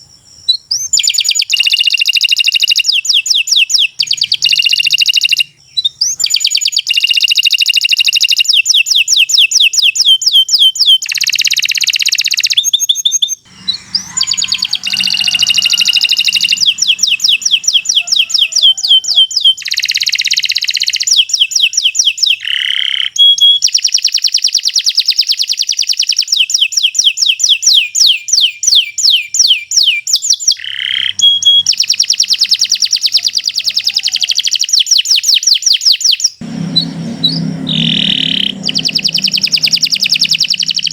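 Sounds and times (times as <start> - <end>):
canary singing high trills: 9.9 - 24.3, 27.7 - 35.4, 36.1 - 40.9.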